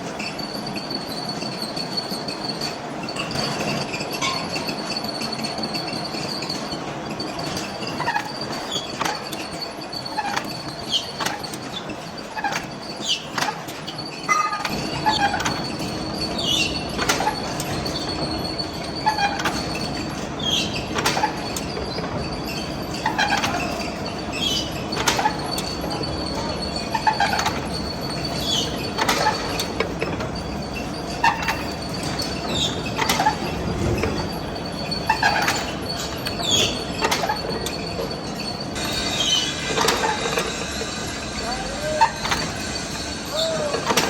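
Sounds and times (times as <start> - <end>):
short falling squeal: 30.4 - 44.0.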